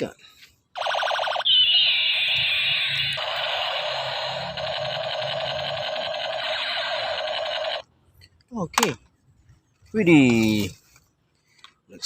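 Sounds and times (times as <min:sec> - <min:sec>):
toy space gun sound effect: 0:00.8 - 0:07.8.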